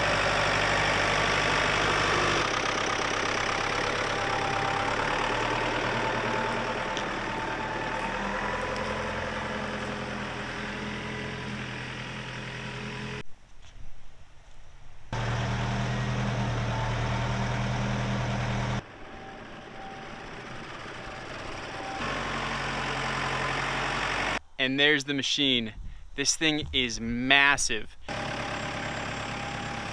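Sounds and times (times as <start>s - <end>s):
vehicle engine running: 0.0s - 13.2s, 15.1s - 24.4s, 28.1s - 29.9s.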